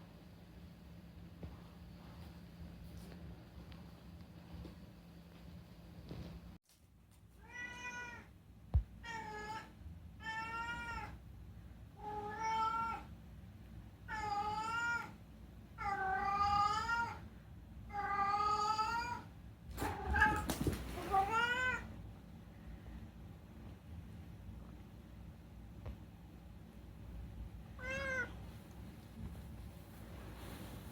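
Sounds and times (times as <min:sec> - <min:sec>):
cat meowing: 0:21.1 - 0:21.9, 0:27.8 - 0:28.4.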